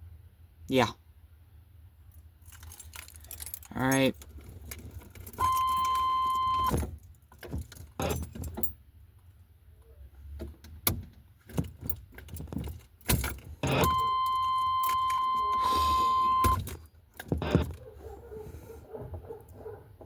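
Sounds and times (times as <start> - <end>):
keys jangling in ignition lock: 2.2 - 8.8, 10.9 - 17.9
electronic warning tone: 5.4 - 6.8, 13.6 - 16.6.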